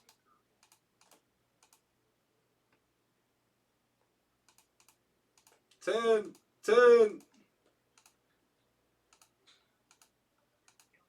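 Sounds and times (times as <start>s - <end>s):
faint computer clicking: 0.0s - 1.9s, 4.4s - 6.5s, 7.2s - 8.2s, 9.1s - 11.0s.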